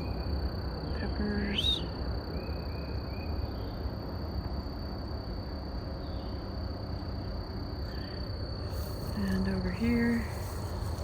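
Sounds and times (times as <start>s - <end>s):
high insect drone: 0.0s - 11.0s
faint chirps: 5.9s - 11.0s.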